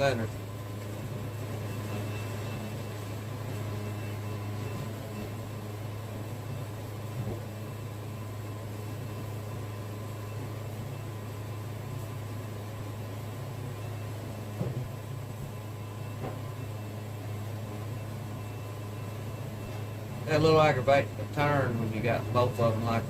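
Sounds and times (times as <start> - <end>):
sawmill engine running: 0.0 - 23.0
brief knock: 14.6 - 14.9, 16.2 - 16.4.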